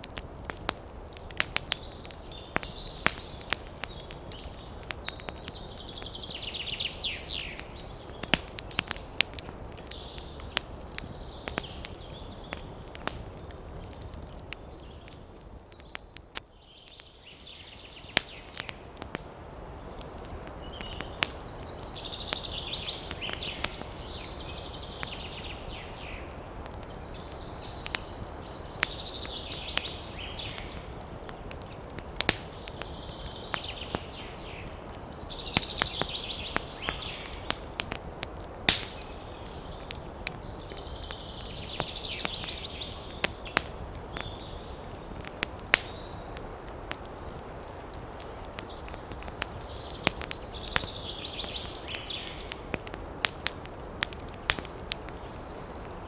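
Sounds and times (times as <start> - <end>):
campfire crackling and popping: 0.0 - 56.0
fire hiss: 17.1 - 56.0.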